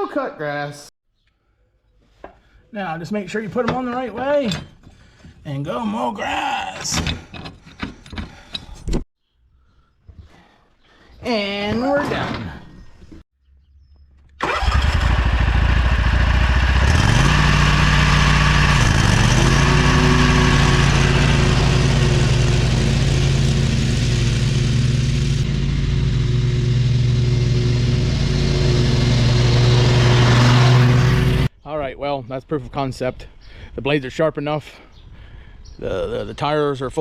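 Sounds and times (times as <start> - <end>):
riding lawn mower engine: 14.4 - 31.5
blades cutting grass: 15.0 - 31.5.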